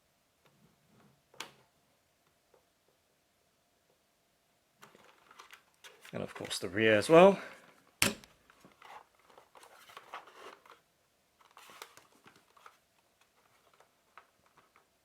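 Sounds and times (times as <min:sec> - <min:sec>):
keyboard handling rustles: 0:04.8 - 0:10.8, 0:11.4 - 0:15.0.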